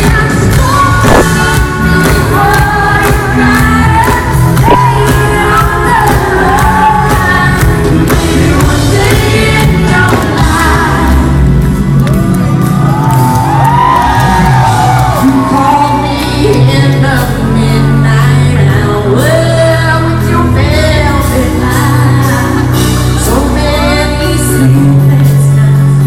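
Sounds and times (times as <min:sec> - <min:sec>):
female singer singing: 0:00.0 - 0:11.7, 0:15.1 - 0:26.0
live pop band playing: 0:00.0 - 0:26.0
crowd shouts and whoops: 0:11.8 - 0:16.6.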